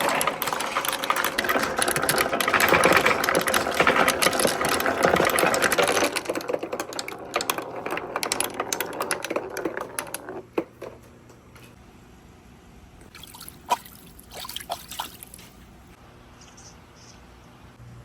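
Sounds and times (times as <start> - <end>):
marbles clattering down a run: 0.0 - 11.0.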